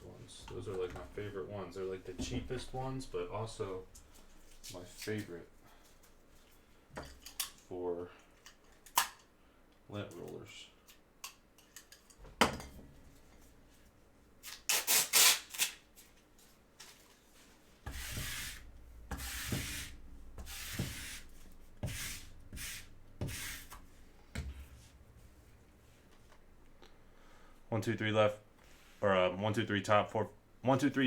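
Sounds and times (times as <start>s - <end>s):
lint roller rubbing surface: 17.4s - 23.8s.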